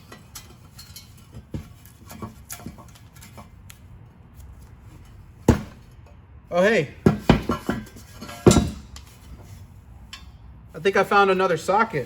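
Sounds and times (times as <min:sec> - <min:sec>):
tool scraping metal: 0:07.1 - 0:10.4.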